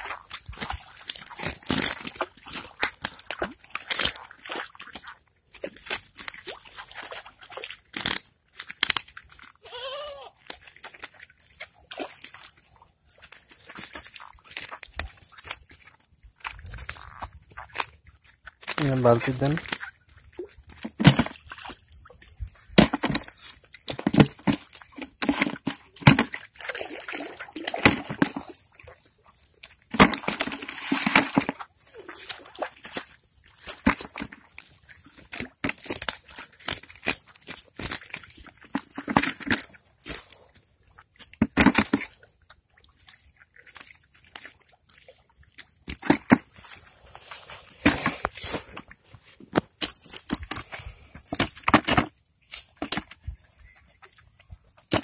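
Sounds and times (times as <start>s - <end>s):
river water splashing: 0.0s - 9.6s, 10.4s - 51.2s.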